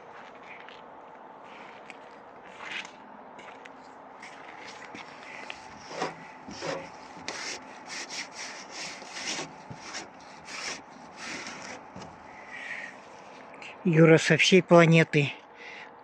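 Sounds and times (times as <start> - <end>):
footsteps crunching in snow: 0.0 - 13.5.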